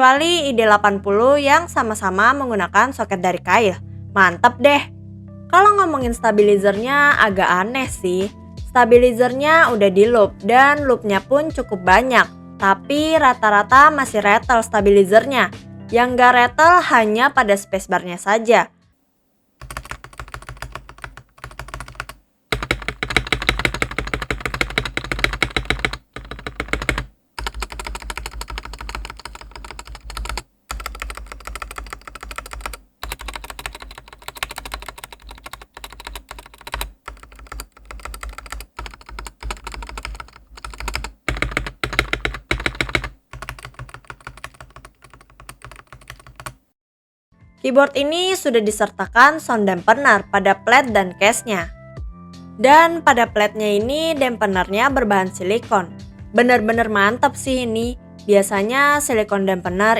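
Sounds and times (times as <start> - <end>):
mechanical keyboard typing: 19.6 - 46.6.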